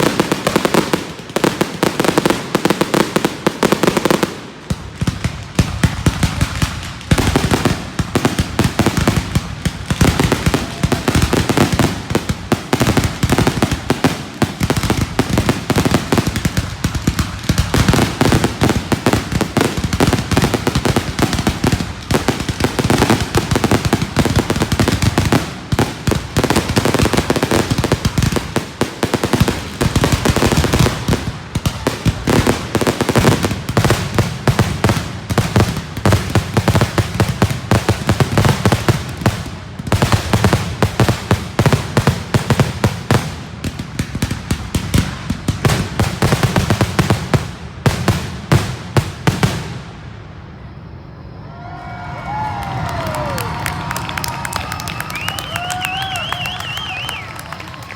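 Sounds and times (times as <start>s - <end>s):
fireworks bangs and crackles: 0.0s - 57.9s.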